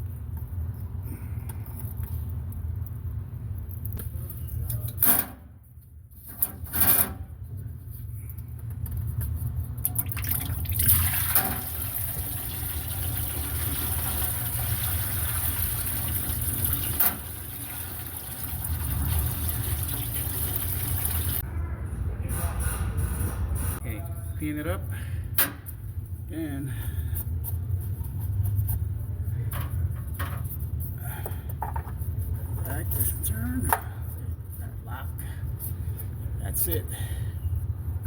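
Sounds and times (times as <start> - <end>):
oil pouring into drain pan: 10.0 - 21.4
steady low hum: 10.8 - 38.0.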